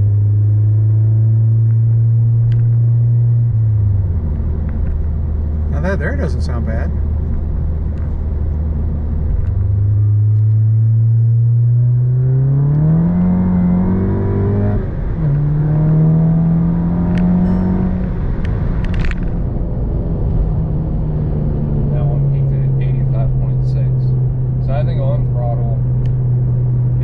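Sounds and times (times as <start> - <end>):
car engine accelerating: 0.0 - 27.0.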